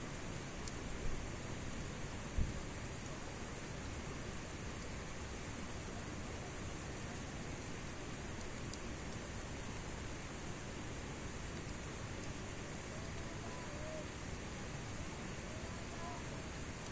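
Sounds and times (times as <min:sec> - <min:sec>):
campfire hissing and crackling: 0:00.0 - 0:16.9.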